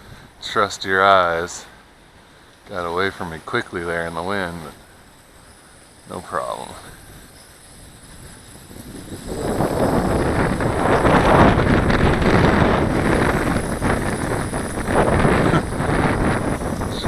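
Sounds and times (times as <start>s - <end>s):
wind buffeting microphone: 5.8s - 17.0s.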